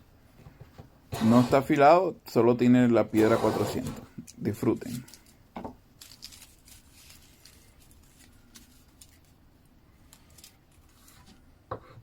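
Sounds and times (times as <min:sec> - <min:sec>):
hand plane shaving wood: 0:01.2 - 0:01.6, 0:03.2 - 0:04.0.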